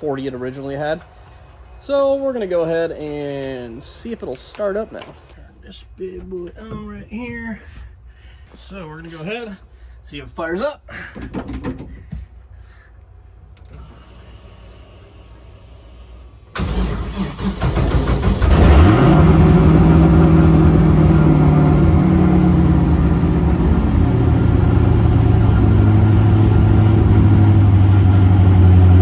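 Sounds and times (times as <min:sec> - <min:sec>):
engine starter cranking: 0:16.6 - 0:20.3
car engine revving and idling: 0:16.6 - 0:29.0.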